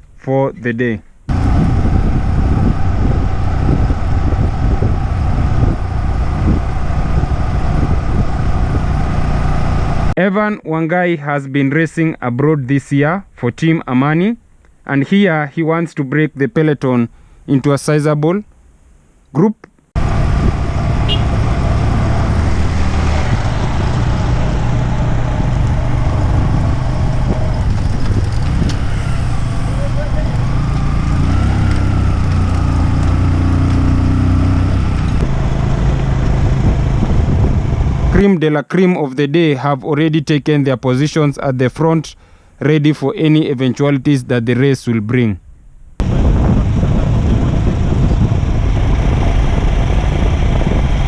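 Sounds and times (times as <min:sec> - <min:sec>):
vehicle running: 0:01.3 - 0:10.2, 0:20.0 - 0:38.2, 0:46.0 - 0:51.0
wind on microphone: 0:01.3 - 0:10.2, 0:20.0 - 0:38.2, 0:46.0 - 0:51.0.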